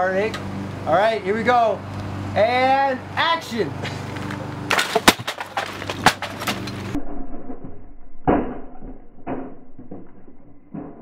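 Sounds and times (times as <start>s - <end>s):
camcorder crashing on concrete: 4.7s - 7.0s.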